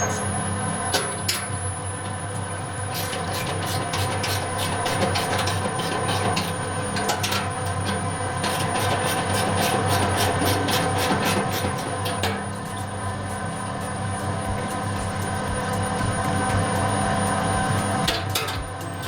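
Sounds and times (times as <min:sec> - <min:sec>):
motor hum: 0:00.0 - 0:19.0.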